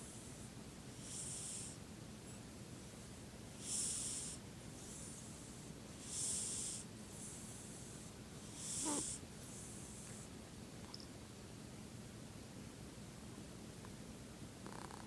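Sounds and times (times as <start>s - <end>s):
pet snoring: 3.6s - 5.2s, 6.0s - 7.8s, 8.5s - 10.2s, 14.6s - 15.0s.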